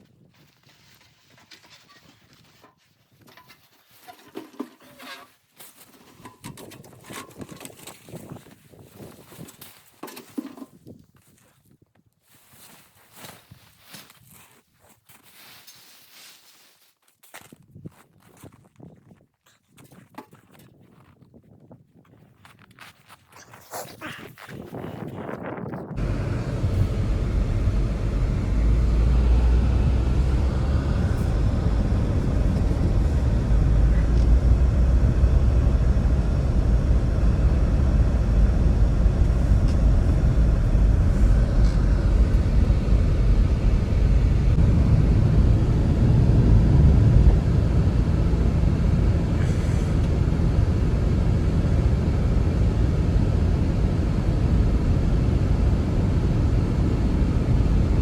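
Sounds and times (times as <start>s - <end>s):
blizzard wind buffeting microphone: 24.2s - 58.0s.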